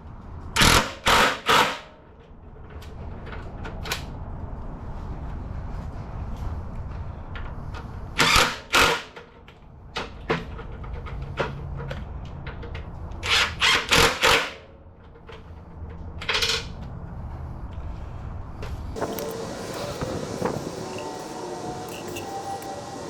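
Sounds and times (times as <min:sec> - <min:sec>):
power tool bursts on bolts: 0:00.6 - 0:01.9, 0:08.2 - 0:09.2, 0:13.2 - 0:14.6.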